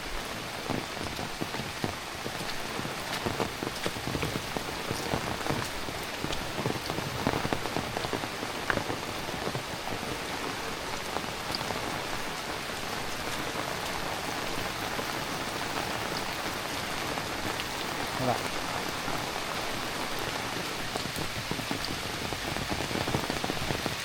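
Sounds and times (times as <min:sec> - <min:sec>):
heavy rain falling: 0:00.0 - 0:24.0
raindrops ticking close by: 0:00.0 - 0:24.0.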